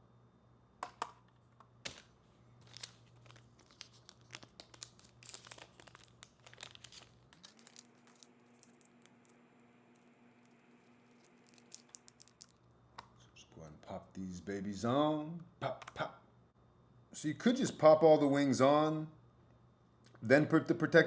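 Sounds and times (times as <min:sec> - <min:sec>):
low steady hum: 0:00.0 - 0:21.0
plastic crinkling and clicking: 0:00.9 - 0:13.1.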